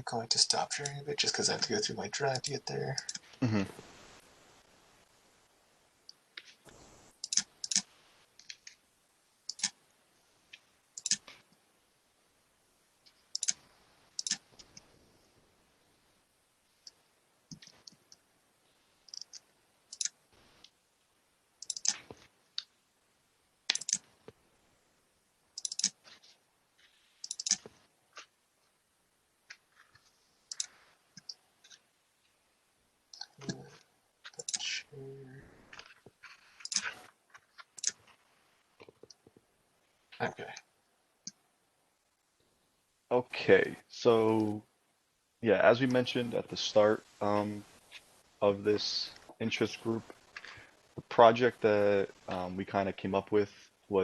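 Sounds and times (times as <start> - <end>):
computer mouse clicking: 2.3 - 3.3, 6.1 - 8.8, 9.5 - 9.8, 11.0 - 11.4, 13.3 - 13.6, 14.2 - 14.8, 19.1 - 20.8, 21.6 - 22.7, 23.7 - 24.1, 25.6 - 26.1, 27.2 - 27.8, 30.5 - 31.4, 34.3 - 34.7, 36.6 - 37.0, 37.7 - 38.0.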